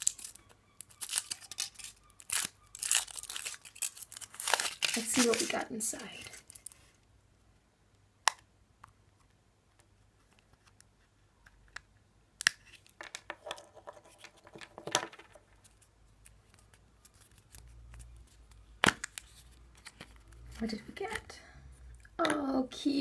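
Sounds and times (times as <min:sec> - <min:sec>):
plastic egg shell cracking: 0:00.0 - 0:06.8, 0:08.2 - 0:08.5, 0:11.4 - 0:15.6, 0:16.2 - 0:20.4
plastic clicks and rustling: 0:09.7 - 0:21.3.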